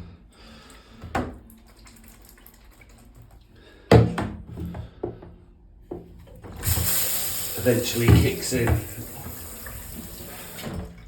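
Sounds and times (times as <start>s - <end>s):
shower valve knock: 6.6s - 10.9s.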